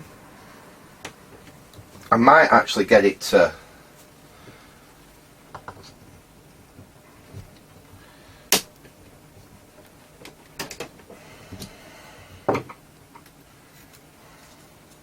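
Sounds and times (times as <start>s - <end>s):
handling clicks and knocks: 8.6s - 11.7s.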